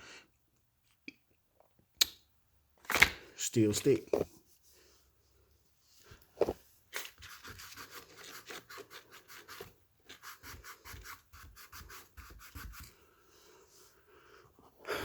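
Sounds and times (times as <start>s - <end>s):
rubbing and scratching strokes: 5.8s - 14.0s.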